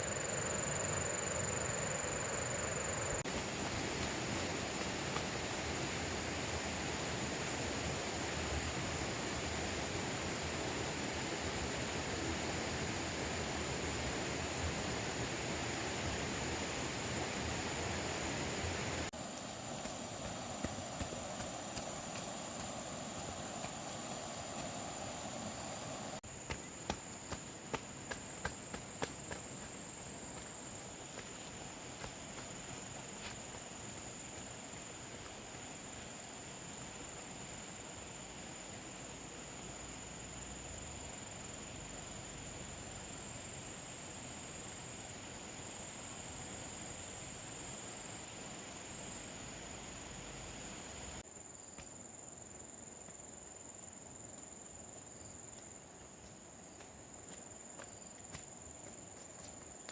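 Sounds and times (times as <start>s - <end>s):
faint hiss: 0.0s - 58.6s
outdoor background noise: 0.0s - 59.9s.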